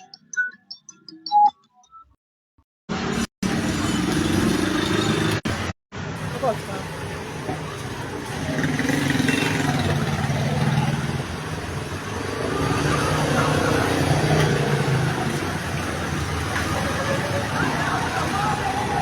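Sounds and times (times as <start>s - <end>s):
vehicle engines passing: 2.9s - 19.0s.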